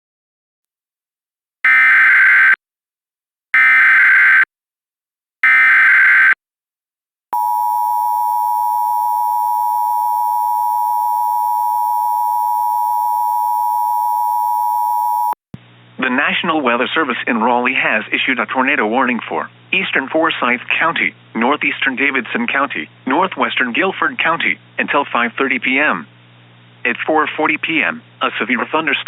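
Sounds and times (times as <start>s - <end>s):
two-tone attention signal: 7.4s - 15.4s.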